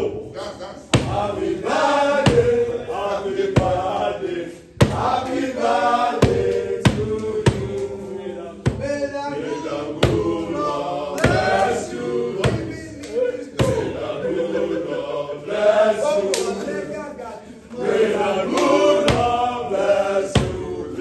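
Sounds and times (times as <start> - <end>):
sharp beat: 0.0 - 4.1, 4.8 - 5.4, 8.6 - 13.0, 13.6 - 14.1
group singing or chanting: 0.0 - 21.0.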